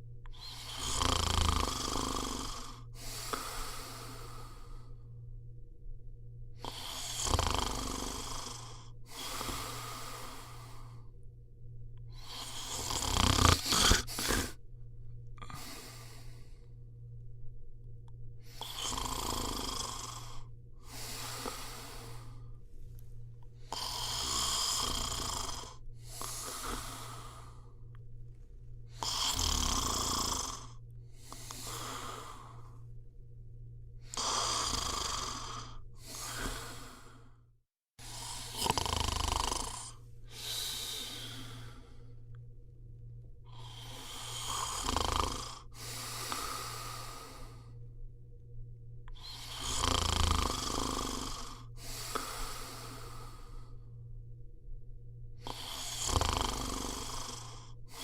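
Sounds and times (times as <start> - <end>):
person snoring: 0.3 - 5.1, 6.6 - 11.1, 12.1 - 14.6, 15.3 - 16.8, 18.4 - 22.6, 23.6 - 27.9, 28.9 - 32.9, 34.0 - 37.4, 38.0 - 42.4, 43.5 - 47.8, 49.1 - 53.9, 55.4 - 58.0.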